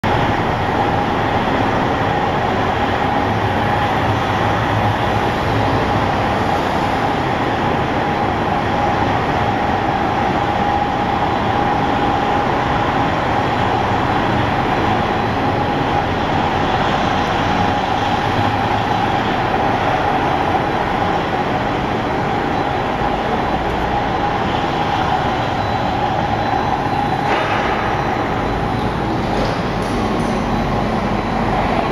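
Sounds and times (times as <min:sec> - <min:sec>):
constant high hum: 0:00.0 - 0:31.9
steady machinery noise: 0:00.0 - 0:31.9.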